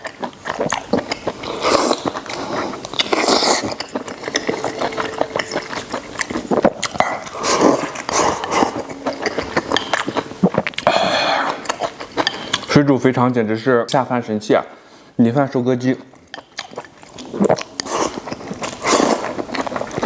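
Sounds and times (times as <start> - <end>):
wet chewing clicks and smacks: 0.0 - 4.5, 11.5 - 12.7, 16.1 - 20.0.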